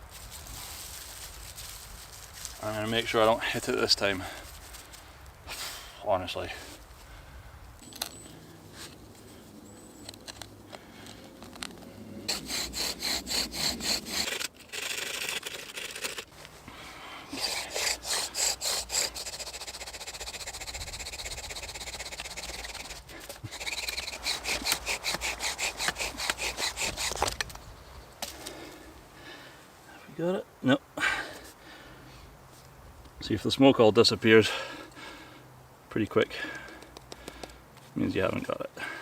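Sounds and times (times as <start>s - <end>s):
wooden spindle squeaking and grinding: 7.8s - 16.4s, 17.3s - 28.1s.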